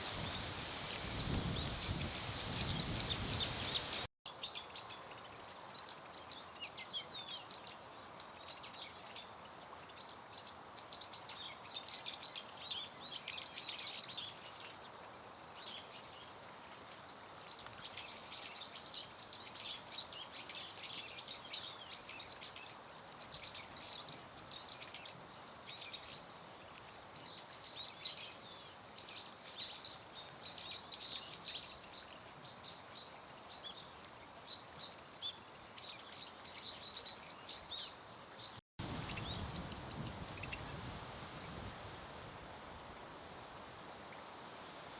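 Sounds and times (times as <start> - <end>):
rain: 0.0 - 4.1, 4.8 - 44.9
wind: 0.0 - 44.9.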